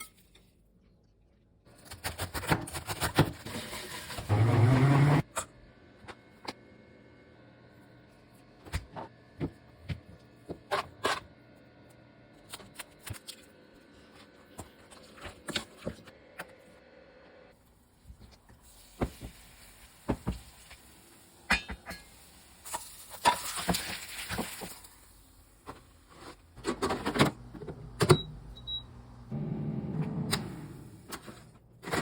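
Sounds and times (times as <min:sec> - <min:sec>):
kitchen clattering and knocks: 0:21.5 - 0:22.1.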